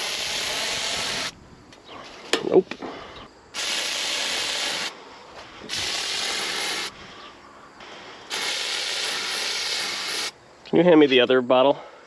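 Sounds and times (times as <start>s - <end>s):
aerosol spray hissing: 0.0s - 1.3s, 3.6s - 5.0s, 5.7s - 7.0s, 8.3s - 10.4s.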